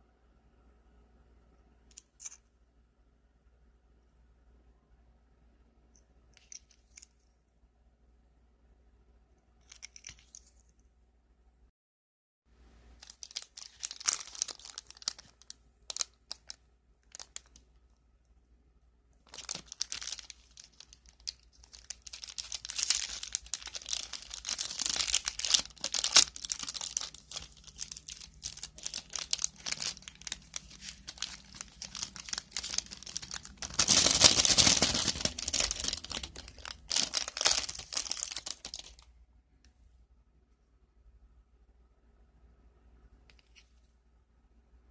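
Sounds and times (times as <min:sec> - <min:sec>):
plastic packaging crinkling and tearing: 0:13.0 - 0:17.6, 0:19.3 - 0:39.0.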